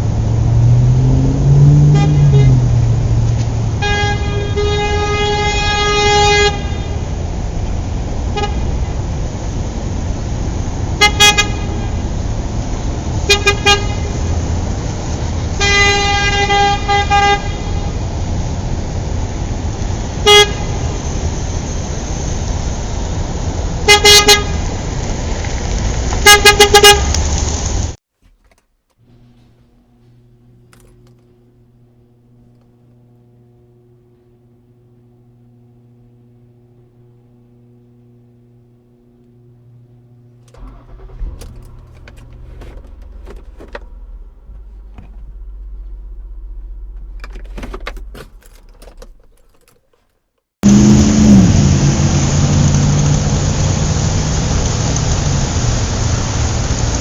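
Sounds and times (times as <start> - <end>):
car horns honking: 0.0 - 9.6, 10.8 - 18.4, 19.0 - 21.5, 22.9 - 24.9, 26.1 - 27.4, 39.1 - 50.0
road traffic rumble: 0.0 - 57.0.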